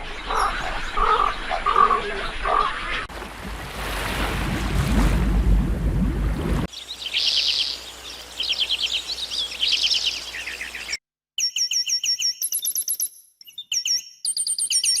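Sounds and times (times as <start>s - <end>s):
bird high trilled song: 6.7s - 15.0s.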